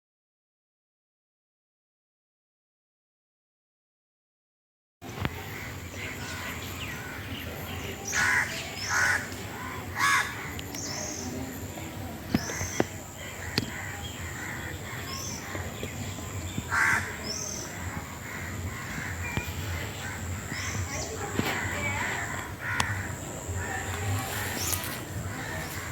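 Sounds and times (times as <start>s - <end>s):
birds calling: 5.1s - 25.9s.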